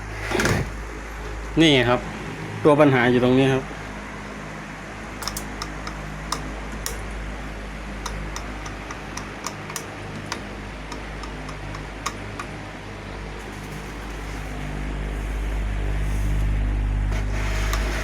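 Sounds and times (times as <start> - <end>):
electric fan motor humming: 0.0 - 18.0
fan gearbox clicking: 5.1 - 15.0, 17.1 - 18.0.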